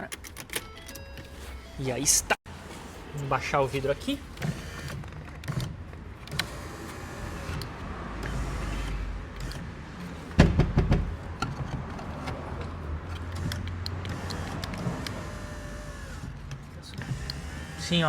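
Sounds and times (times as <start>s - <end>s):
power window motor hum: 13.2s - 16.4s.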